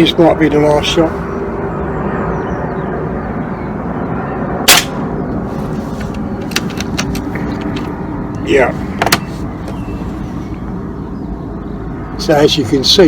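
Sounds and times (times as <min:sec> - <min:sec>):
steady background rumble: 0:00.0 - 0:13.0
air rifle shot: 0:04.7 - 0:05.1.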